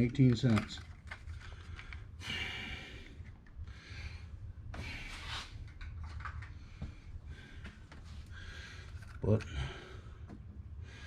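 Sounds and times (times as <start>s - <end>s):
hands rubbing and scraping parts: 0.0s - 2.1s, 7.6s - 9.5s
low steady hum: 0.0s - 11.0s.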